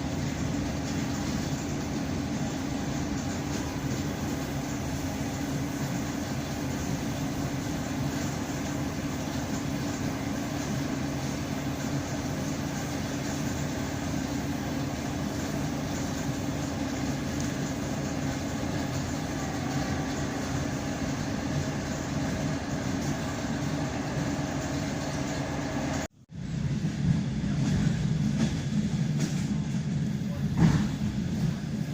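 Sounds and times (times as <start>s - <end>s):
train wheels rumbling: 0.0s - 31.9s.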